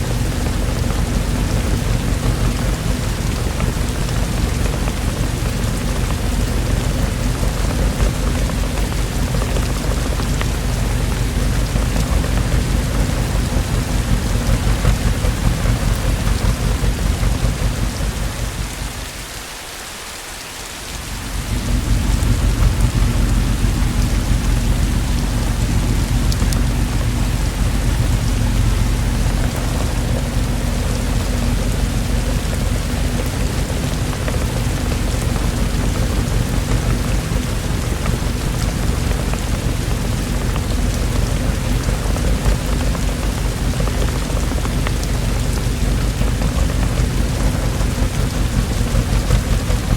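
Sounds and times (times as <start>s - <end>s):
low thunder rumble: 0.0s - 19.4s, 20.9s - 49.9s
steady rainfall: 0.0s - 49.9s.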